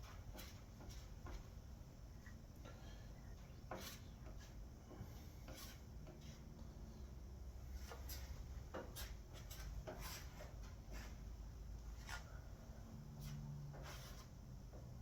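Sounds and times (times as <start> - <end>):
faint low hum: 0.0 - 15.0
spatula scraping filler on metal: 3.7 - 6.5.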